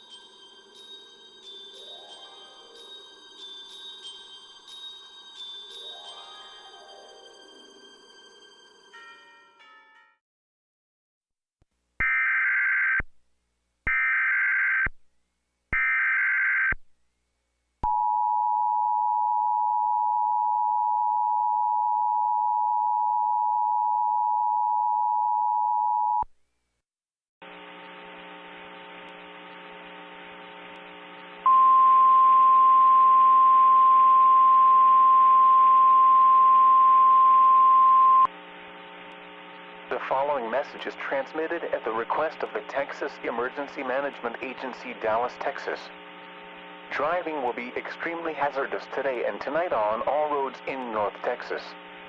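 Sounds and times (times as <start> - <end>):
loud steady single tone: 17.8 - 26.3, 27.4 - 41.5.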